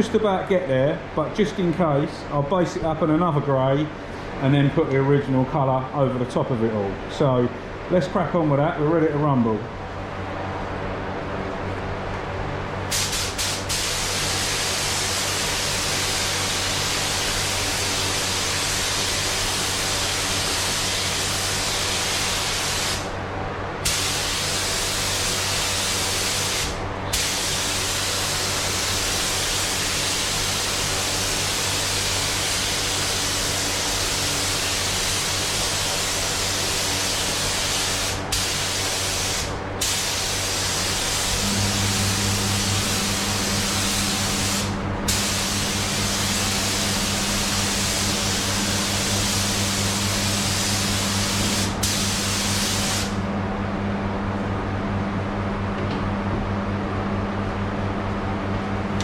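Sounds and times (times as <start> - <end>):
steady low hum: 0.0 - 19.9, 20.6 - 30.8, 31.9 - 59.0
spray gun hissing: 12.9 - 23.1, 23.8 - 53.2.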